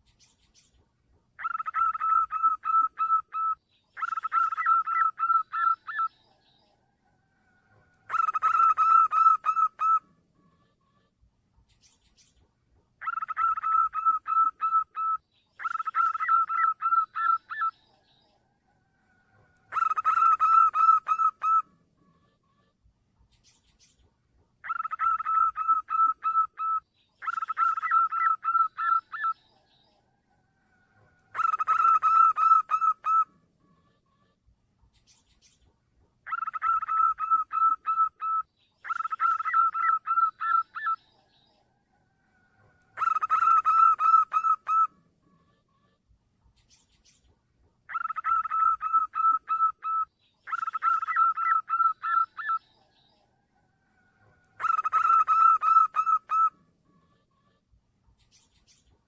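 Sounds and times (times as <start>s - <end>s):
dove cooing: 1.4s - 6.2s, 7.4s - 10.8s, 13.0s - 22.4s, 24.6s - 29.5s, 30.6s - 34.1s, 36.2s - 41.1s, 41.7s - 45.9s, 47.9s - 57.4s.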